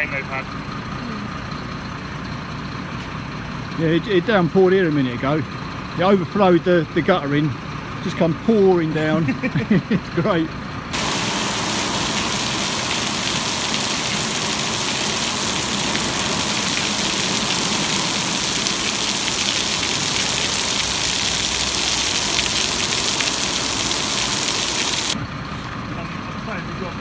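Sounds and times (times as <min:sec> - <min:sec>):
heavy rain on hard surfaces: 0:11.0 - 0:25.2.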